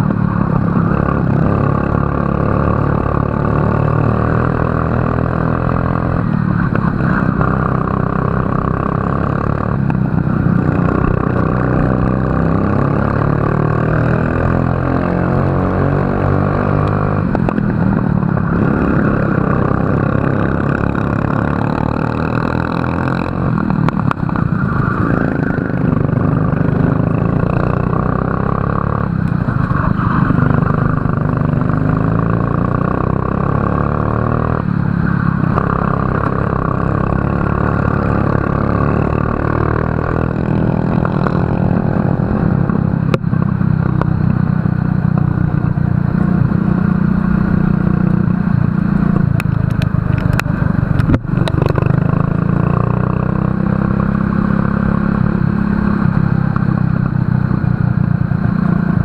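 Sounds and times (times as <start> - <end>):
racing kart engine revving: 0.0 - 43.2.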